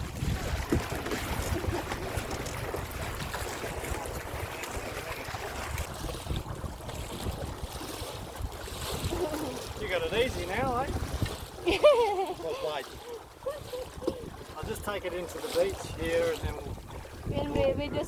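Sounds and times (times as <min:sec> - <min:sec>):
water washing around boat: 0:00.0 - 0:18.0
wind buffeting microphone: 0:00.0 - 0:18.0.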